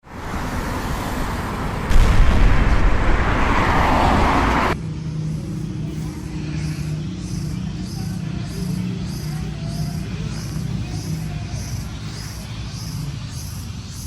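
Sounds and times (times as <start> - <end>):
loud rushing rumble: 0.0 - 9.5.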